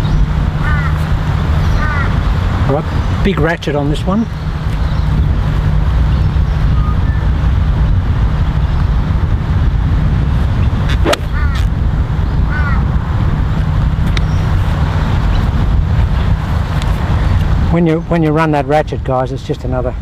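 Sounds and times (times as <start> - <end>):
wind buffeting microphone: 0.0 - 20.0
golf club striking ball: 10.9 - 11.7.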